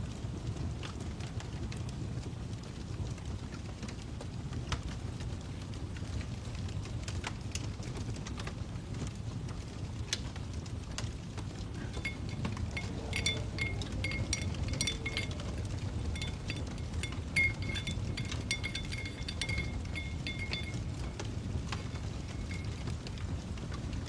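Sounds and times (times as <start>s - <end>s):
crackling fire: 0.0s - 24.0s
glass clinking: 11.8s - 22.9s.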